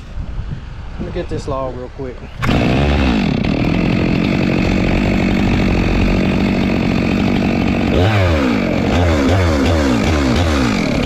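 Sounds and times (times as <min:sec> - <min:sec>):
chainsaw cutting a log: 0:02.4 - 0:11.0.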